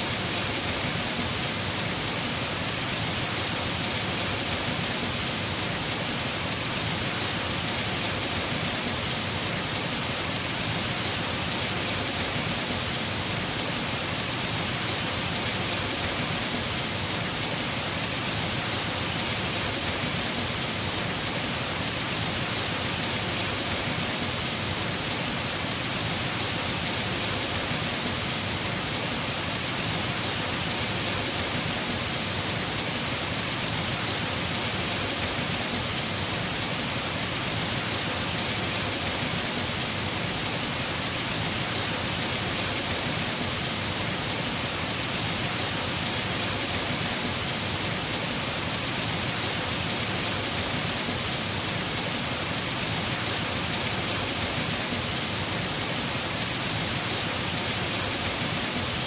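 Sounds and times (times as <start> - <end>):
heavy rain on a roof: 0.0 - 59.0.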